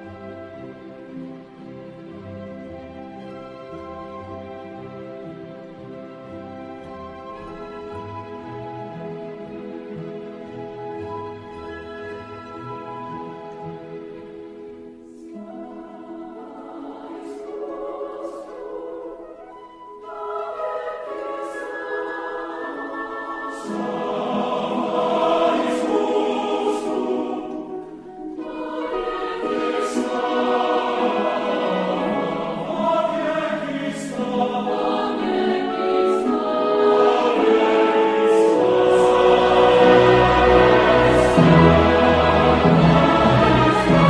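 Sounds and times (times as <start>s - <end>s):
orchestra playing: 0.0s - 44.0s
choral singing: 15.0s - 44.0s.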